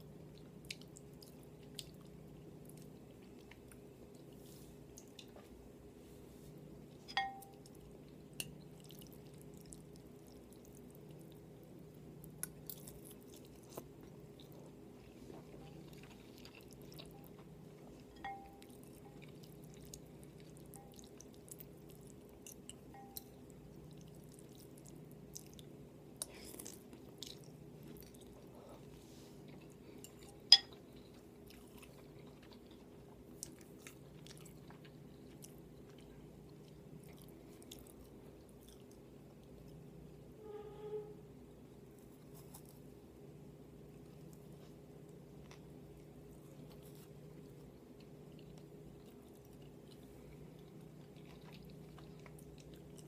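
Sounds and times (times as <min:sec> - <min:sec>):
steady low hum: 0:00.0 - 0:53.0
chewing and mouth sounds: 0:00.2 - 0:05.5, 0:06.9 - 0:39.8, 0:42.0 - 0:42.9, 0:43.9 - 0:53.0.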